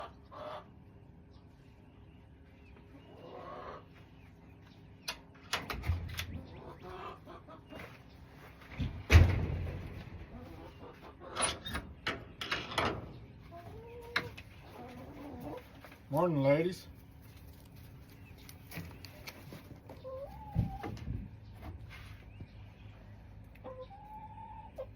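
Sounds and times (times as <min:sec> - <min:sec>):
hens clucking: 0:00.0 - 0:24.9
loud thump: 0:09.0 - 0:10.0.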